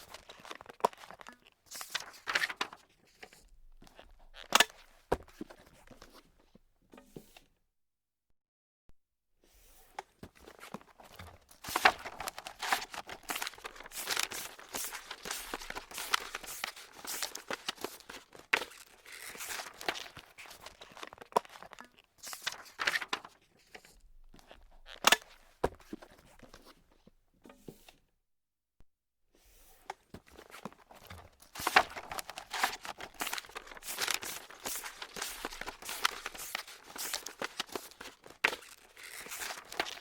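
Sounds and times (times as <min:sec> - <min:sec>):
paper crumpling: 0:00.0 - 0:02.8, 0:11.0 - 0:23.3, 0:30.3 - 0:40.0.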